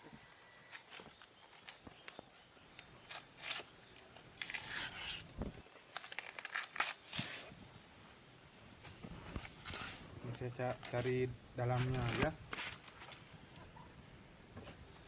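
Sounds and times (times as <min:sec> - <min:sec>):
banana sheaths tearing: 0:03.0 - 0:07.6, 0:11.8 - 0:13.2.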